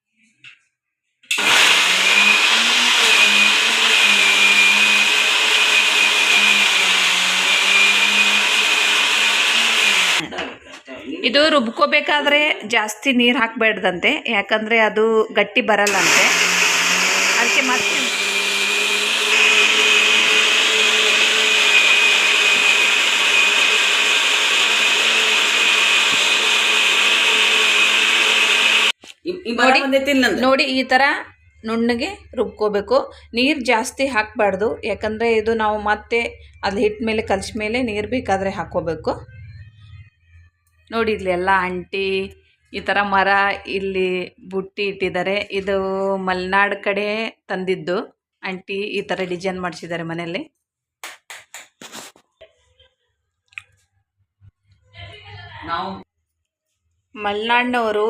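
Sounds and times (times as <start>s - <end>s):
mixer grinder running: 1.3s - 10.3s, 15.9s - 29.0s.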